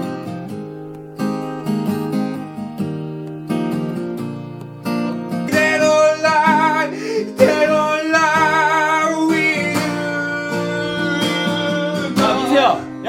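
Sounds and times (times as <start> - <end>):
strummed acoustic guitar: 0.0 - 13.0
man singing with vibrato: 5.4 - 13.0.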